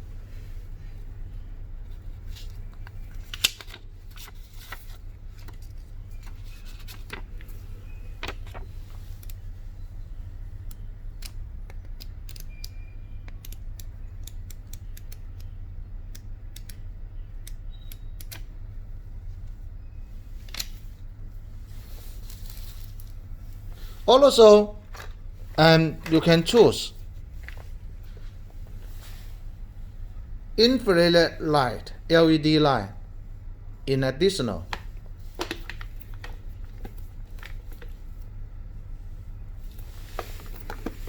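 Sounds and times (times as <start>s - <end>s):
steady low hum: 0.0s - 41.0s
paper rustling: 2.2s - 9.5s, 25.8s - 29.2s, 39.8s - 41.0s.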